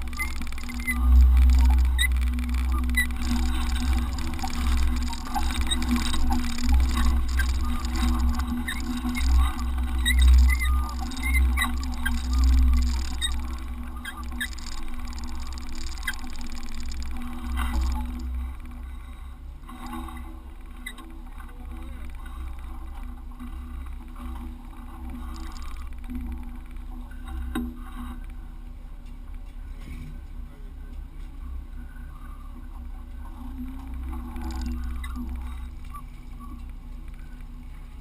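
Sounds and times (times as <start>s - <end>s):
vehicle engine running: 0.0s - 18.2s.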